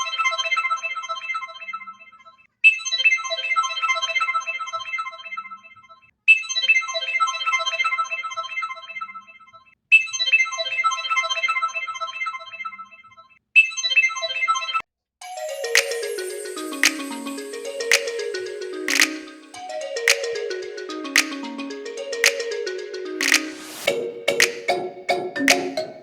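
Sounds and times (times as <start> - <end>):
tinkling phone ringtone: 15.2 - 26.0.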